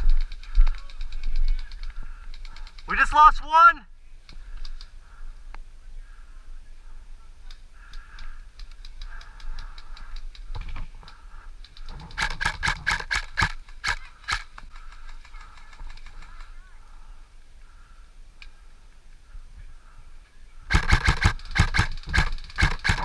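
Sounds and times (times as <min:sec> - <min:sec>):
airsoft guns firing: 0:12.0 - 0:16.2, 0:20.7 - 0:23.0.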